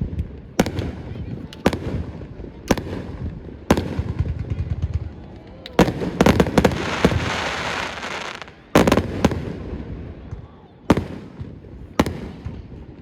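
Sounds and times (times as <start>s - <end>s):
fireworks bangs: 0.0s - 13.0s
fireworks crackling hiss: 5.6s - 10.0s.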